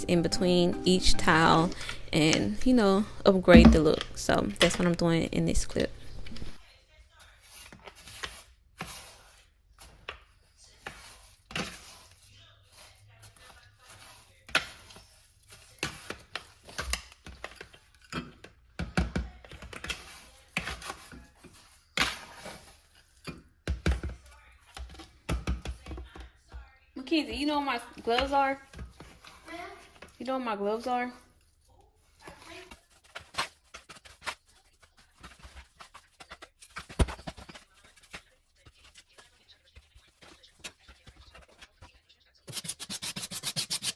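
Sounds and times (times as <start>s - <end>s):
grout tool tapping and scraping tiles: 0.1s - 6.6s, 7.4s - 26.6s, 27.3s - 30.2s, 32.0s - 43.9s.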